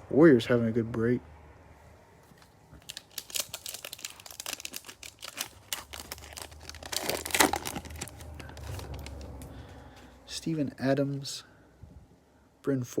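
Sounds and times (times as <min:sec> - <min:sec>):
wrapper crinkling and tearing: 0:02.4 - 0:09.6.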